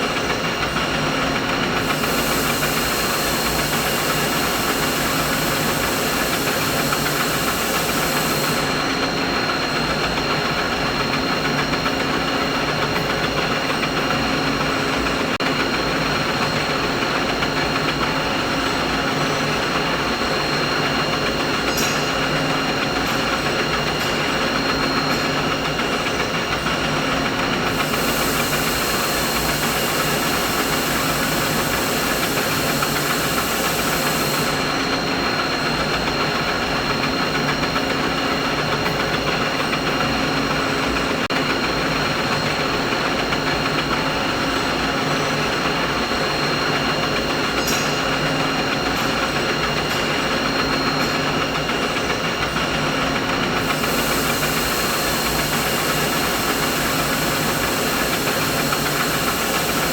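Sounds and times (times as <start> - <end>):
mechanical drone with whining tones: 0.0 - 11.9, 27.2 - 37.5, 49.6 - 59.9
thin high hiss: 1.8 - 8.8, 27.7 - 34.7, 53.6 - 59.9.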